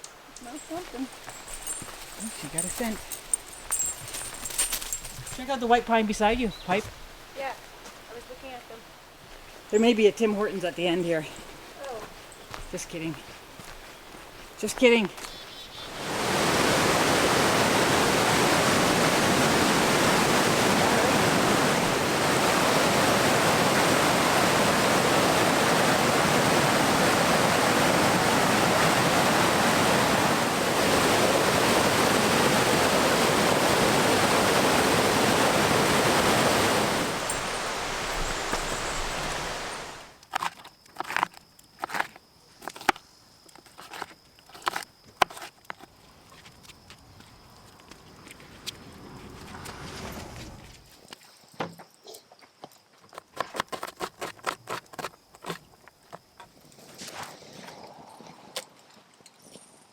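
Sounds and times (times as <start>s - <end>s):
waterfall roar: 15.9s - 40.1s.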